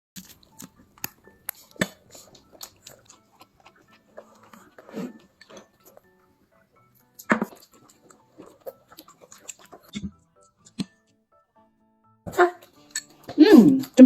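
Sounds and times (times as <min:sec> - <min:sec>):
child chewing crunchy food: 0:00.2 - 0:11.0, 0:12.3 - 0:14.0.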